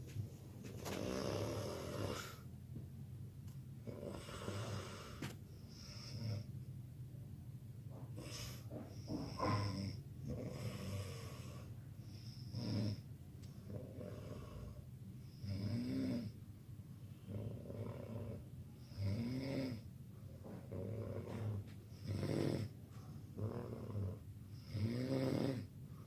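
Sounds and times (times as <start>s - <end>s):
person snoring: 0.9s - 2.4s, 3.8s - 6.5s, 8.2s - 13.0s, 23.4s - 25.7s.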